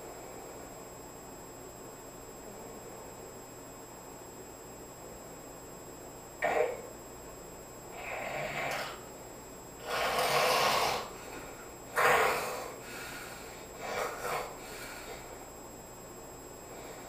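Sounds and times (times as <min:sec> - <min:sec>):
person snoring: 0:07.9 - 0:09.0, 0:09.8 - 0:11.2, 0:12.0 - 0:15.2.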